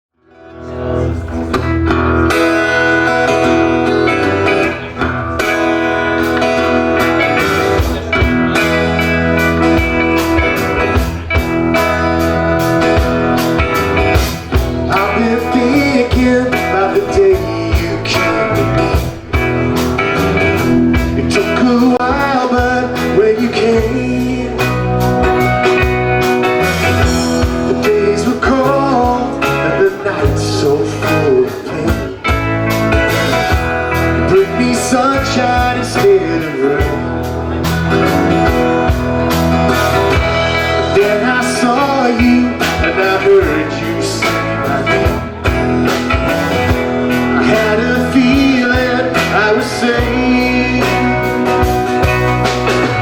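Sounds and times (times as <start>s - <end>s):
blues guitar: 0.1s - 53.0s
live band instrumental: 0.2s - 53.0s
sharp strummed strokes: 0.3s - 23.6s.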